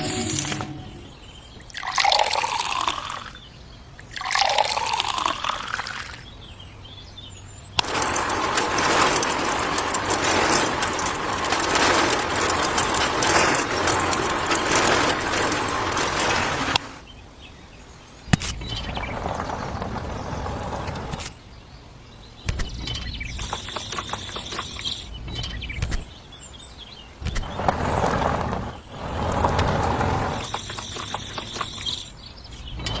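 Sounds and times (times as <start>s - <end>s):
liquid pouring: 1.7s - 3.4s, 4.0s - 6.2s, 23.4s - 25.1s, 29.8s - 32.1s.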